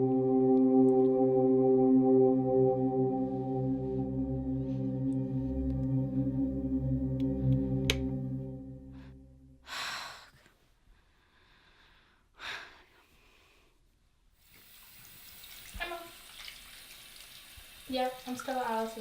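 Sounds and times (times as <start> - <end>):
water tap running: 14.4 - 19.0.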